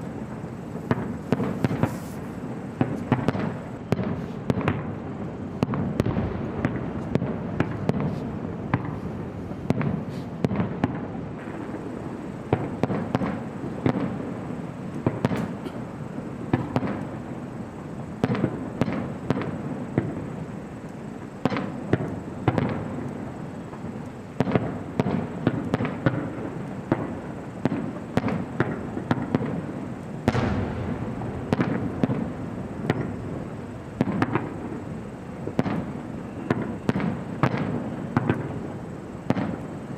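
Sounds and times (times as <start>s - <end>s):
firework shells bursting: 0.0s - 14.3s, 14.9s - 17.2s, 18.2s - 39.9s
low crackle: 0.0s - 39.9s
echoing rumble: 30.3s - 35.4s.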